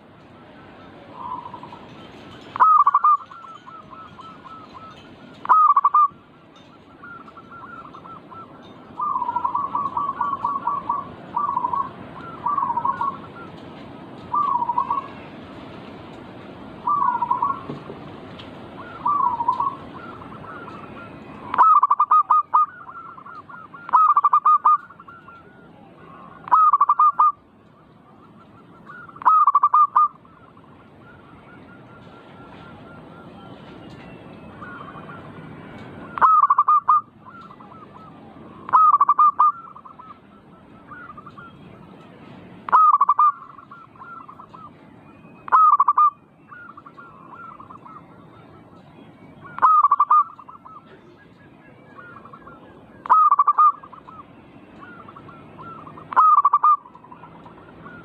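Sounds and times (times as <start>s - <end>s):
doves cooing: 0.0s - 15.5s, 16.7s - 41.9s, 42.7s - 58.0s.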